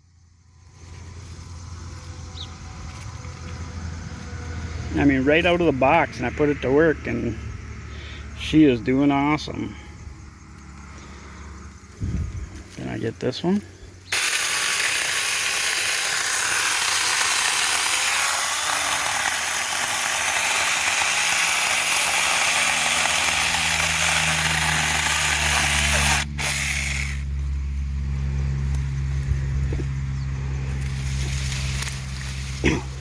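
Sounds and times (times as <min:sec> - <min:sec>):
motor humming: 0:13.5 - 0:33.0
electric chainsaw cutting wood: 0:14.1 - 0:33.0.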